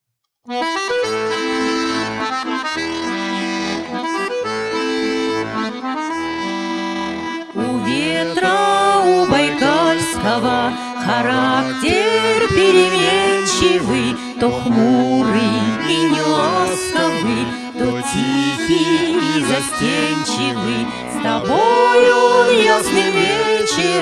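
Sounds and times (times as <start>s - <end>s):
accordion playing: 0.4s - 24.0s
singing voice with vibrato: 7.6s - 24.0s.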